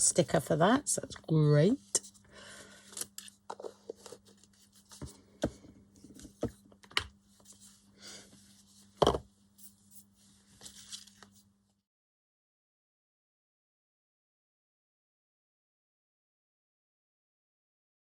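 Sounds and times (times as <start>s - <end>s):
faint steady hum: 0.0s - 11.8s
knock on table: 9.0s - 9.3s
paper rustling: 9.6s - 11.4s.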